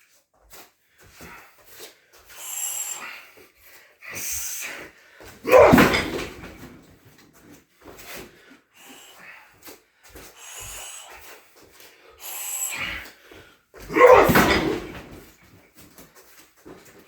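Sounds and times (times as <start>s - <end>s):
sharp hissing exhalations: 2.4s - 3.3s, 8.8s - 9.4s, 12.2s - 13.1s
shin striking a pad: 5.5s - 6.6s, 13.9s - 15.2s
soft breaths: 8.0s - 13.9s.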